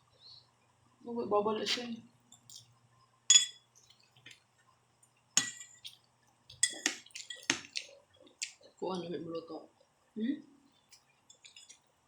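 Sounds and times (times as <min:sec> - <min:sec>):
utensils clinking against dishes: 0:03.3 - 0:03.6, 0:06.5 - 0:07.8.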